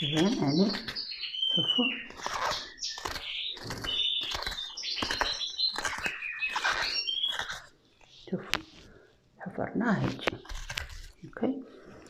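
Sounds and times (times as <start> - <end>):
metal spoon scraping turnip: 0.0 - 7.8, 10.2 - 11.2.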